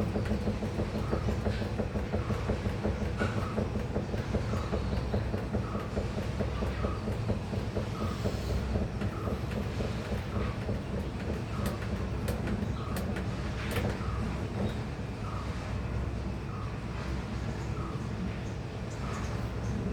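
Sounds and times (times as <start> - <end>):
washing machine spinning: 0.0 - 16.9.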